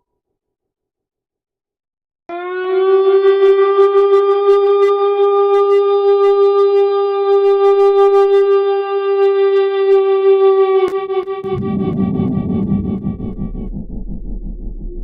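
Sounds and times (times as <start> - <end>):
steady horn-like tone: 11.4 - 15.0.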